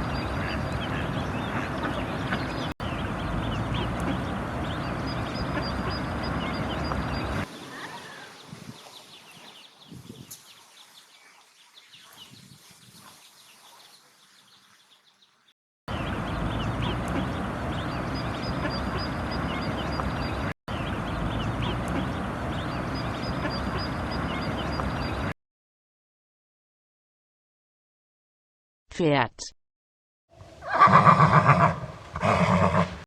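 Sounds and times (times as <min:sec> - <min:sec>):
ducklings peeping: 0:00.0 - 0:08.1, 0:15.9 - 0:25.3.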